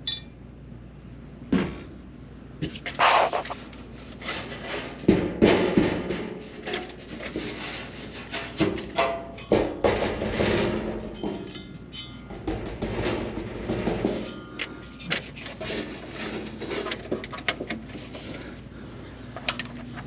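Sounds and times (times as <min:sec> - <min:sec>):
brief metallic ring: 0:00.0 - 0:00.5.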